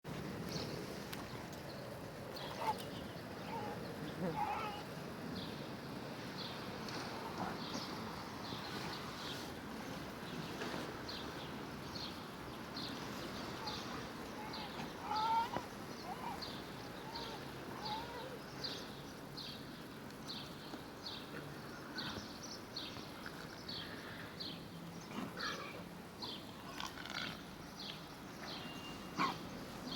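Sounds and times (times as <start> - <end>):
outdoor background noise: 0.0 - 29.9.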